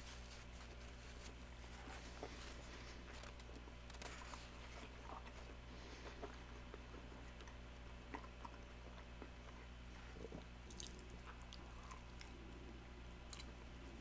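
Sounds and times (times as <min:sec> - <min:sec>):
steady low hum: 0:00.0 - 0:14.0
person chewing: 0:04.2 - 0:13.6.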